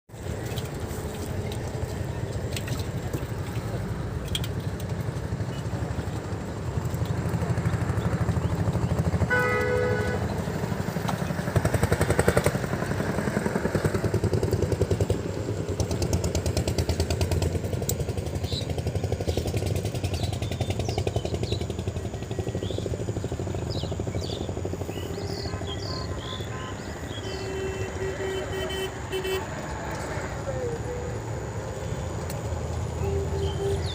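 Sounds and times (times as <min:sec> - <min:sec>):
small engine running: 0:05.1 - 0:27.8
brief horn-like tone: 0:09.3 - 0:10.2, 0:33.0 - 0:33.9.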